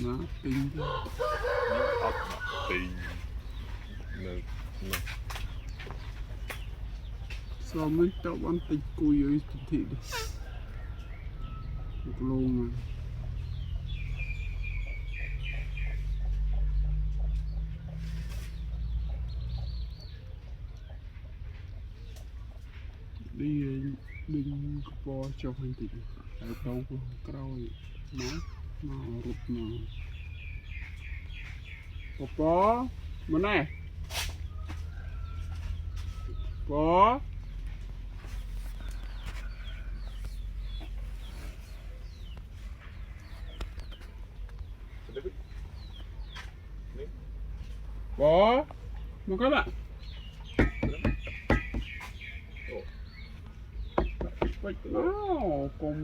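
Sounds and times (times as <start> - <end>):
high chirping animal calls: 0.0 - 21.1, 23.2 - 36.8, 48.2 - 56.0
small animal chirping: 10.0 - 10.5, 28.1 - 28.8.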